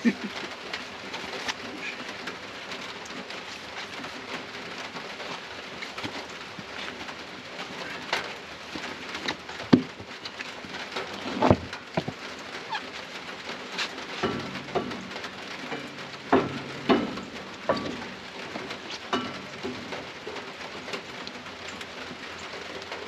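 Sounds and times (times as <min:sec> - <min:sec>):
rain patter: 0:00.0 - 0:23.0
sharp knocks: 0:14.2 - 0:18.2.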